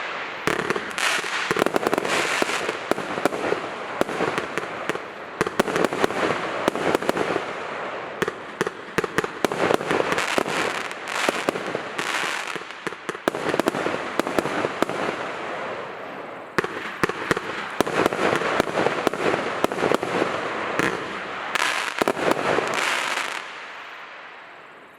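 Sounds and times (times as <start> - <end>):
firework crackling and banging: 0.0 - 23.7.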